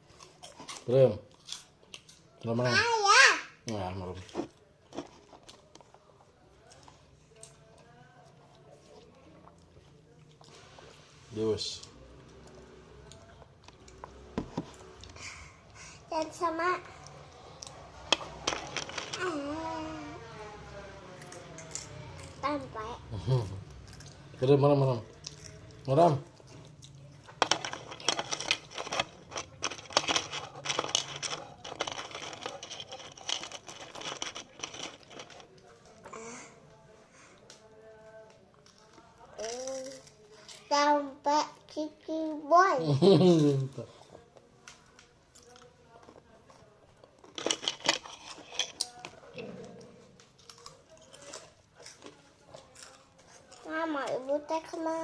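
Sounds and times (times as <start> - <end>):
crunching corn snacks: 27.4 - 35.6, 47.1 - 49.0
plastic packaging crinkling: 27.4 - 35.6.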